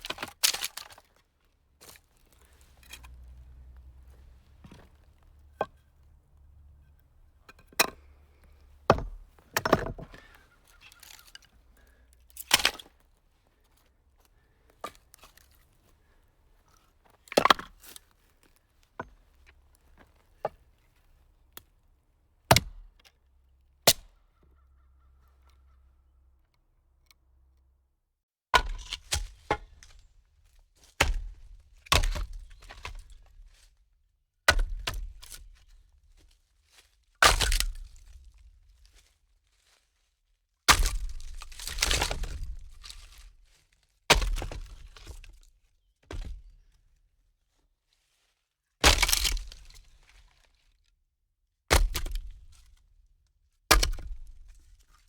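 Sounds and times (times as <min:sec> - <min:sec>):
sharp impact knocks and cracks: 0:00.0 - 0:01.1, 0:08.9 - 0:10.2, 0:12.4 - 0:12.9, 0:22.5 - 0:23.0, 0:28.6 - 0:30.0, 0:31.0 - 0:33.3, 0:34.5 - 0:35.7, 0:37.2 - 0:38.2, 0:40.7 - 0:43.3, 0:44.1 - 0:45.4, 0:46.0 - 0:46.5, 0:48.8 - 0:50.1, 0:51.7 - 0:52.7, 0:53.7 - 0:54.6.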